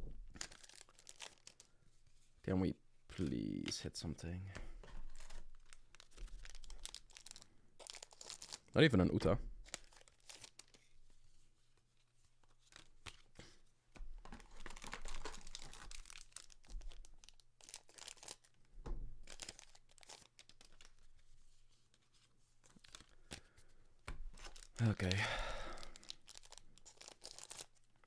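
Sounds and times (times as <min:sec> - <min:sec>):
cards being handled: 0:00.4 - 0:01.7, 0:04.5 - 0:08.8, 0:09.6 - 0:18.6, 0:19.2 - 0:25.2
foil wrapper tearing and crinkling: 0:00.4 - 0:01.7, 0:05.1 - 0:08.8, 0:09.6 - 0:11.0, 0:14.4 - 0:18.6, 0:19.2 - 0:21.1, 0:22.7 - 0:23.5, 0:24.3 - 0:27.9.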